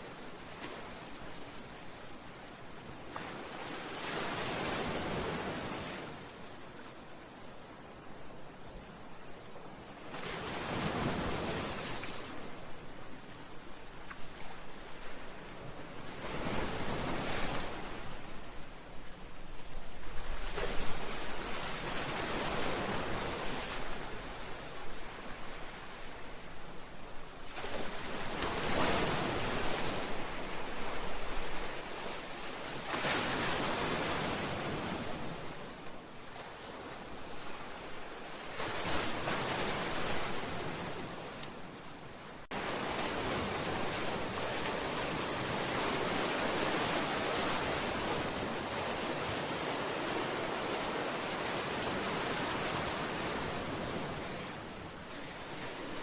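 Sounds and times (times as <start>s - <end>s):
waves surging against seawall: 42.5s - 56.0s.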